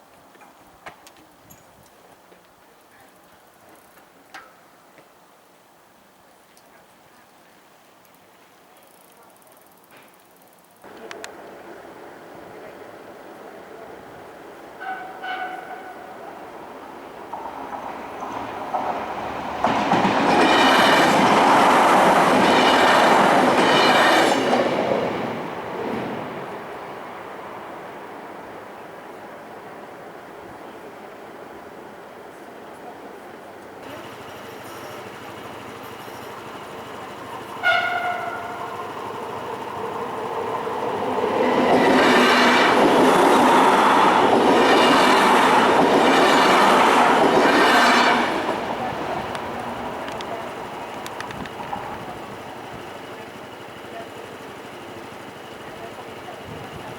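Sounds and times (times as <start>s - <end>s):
train wheels clattering on rails: 17.2s - 26.5s, 33.8s - 56.9s.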